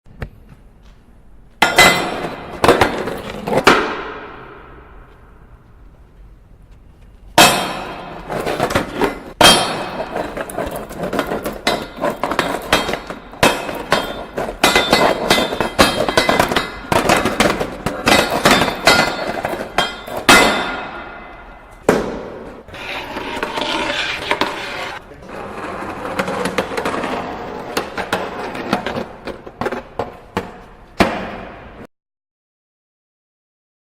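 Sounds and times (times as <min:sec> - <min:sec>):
skateboard hitting metal railing: 0:01.6 - 0:05.0, 0:07.4 - 0:25.0
skateboard grinding on railing: 0:08.1 - 0:20.4, 0:22.3 - 0:29.8.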